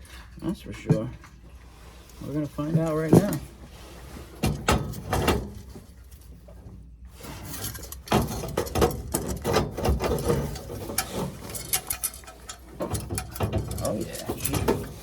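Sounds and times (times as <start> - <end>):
small metallic clicks and rattles: 7.5 - 15.0.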